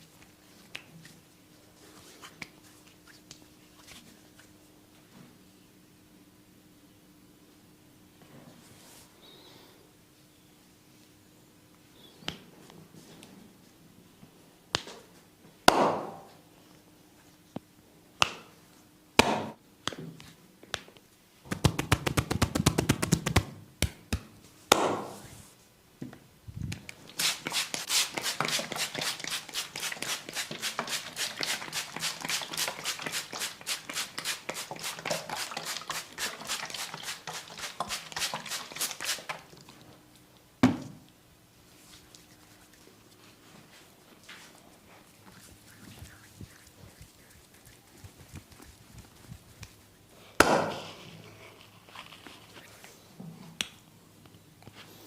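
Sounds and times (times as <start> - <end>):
hands slapping skin: 18.2 - 18.5, 21.5 - 25.1, 45.3 - 49.8
fast tapping on skin: 21.5 - 24.2, 45.4 - 49.9.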